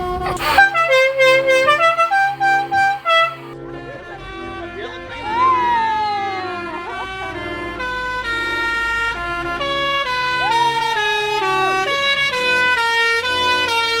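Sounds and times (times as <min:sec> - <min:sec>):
truck musical horn: 0:00.0 - 0:03.6.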